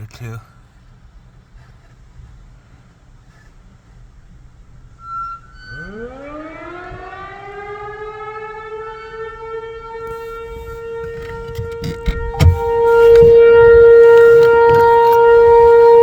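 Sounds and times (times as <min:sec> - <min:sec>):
warning siren winding up: 0:05.0 - 0:16.0.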